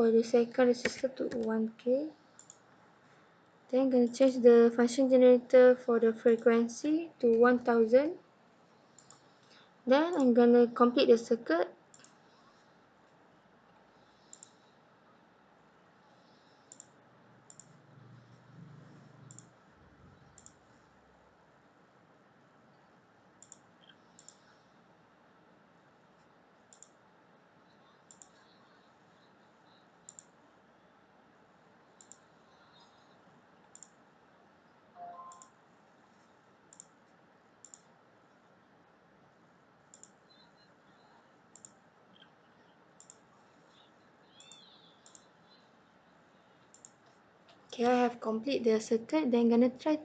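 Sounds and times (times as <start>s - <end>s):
computer mouse clicks: 0.7s - 2.8s, 6.1s - 6.5s, 8.8s - 10.4s, 11.9s - 12.6s, 13.7s - 14.8s, 16.1s - 20.8s, 23.4s - 24.7s, 26.2s - 27.0s, 28.0s - 28.9s, 29.7s - 30.5s, 31.9s - 34.0s, 35.2s - 38.0s, 39.9s - 42.4s, 43.0s - 45.7s, 46.6s - 48.0s
brief faint tone: 35.0s - 35.5s.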